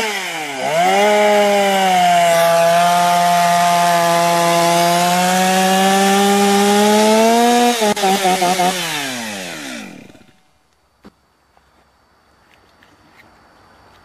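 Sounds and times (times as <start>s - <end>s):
chainsaw running at high revs: 0.0s - 10.4s.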